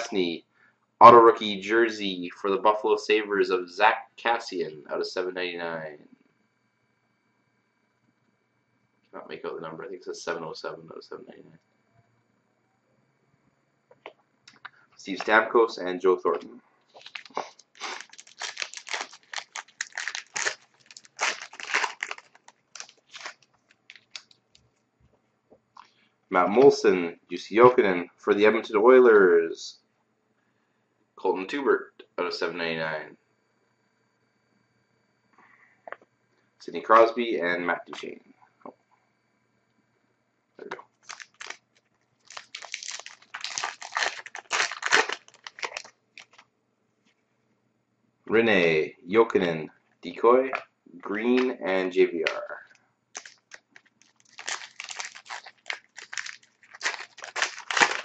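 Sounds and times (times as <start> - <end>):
card pack wrapper crinkling and tearing: 16.9 - 24.4, 41.0 - 46.4, 53.2 - 58.0.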